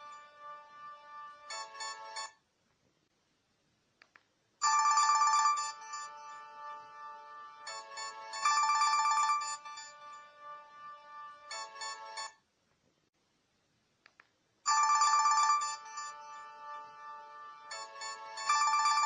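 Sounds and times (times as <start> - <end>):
chiming electronic ringtone melody: 0.0 - 2.4, 4.6 - 12.4, 14.7 - 19.0.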